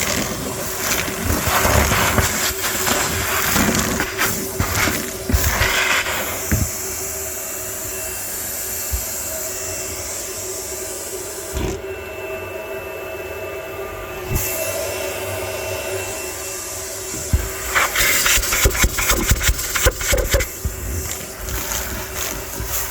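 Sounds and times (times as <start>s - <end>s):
vacuum cutting out knock: 0.0s - 7.1s
vacuum cleaner running: 0.0s - 22.9s.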